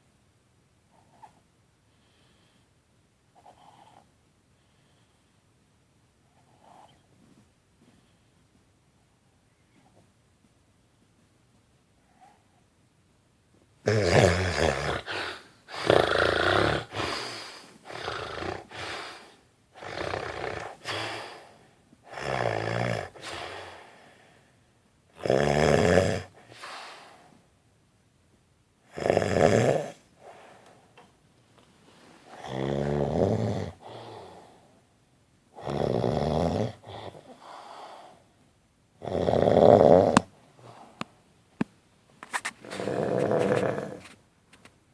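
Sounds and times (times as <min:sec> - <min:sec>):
soft breaths: 0:00.8 - 0:12.9, 0:14.7 - 0:24.9, 0:26.3 - 0:27.6, 0:29.9 - 0:35.6, 0:36.7 - 0:38.6, 0:40.2 - 0:44.7
man snoring: 0:13.9 - 0:19.2, 0:19.8 - 0:21.4, 0:22.1 - 0:23.6, 0:25.2 - 0:26.4, 0:28.9 - 0:30.0, 0:32.3 - 0:34.4, 0:35.6 - 0:37.2, 0:39.0 - 0:40.3, 0:42.6 - 0:44.0.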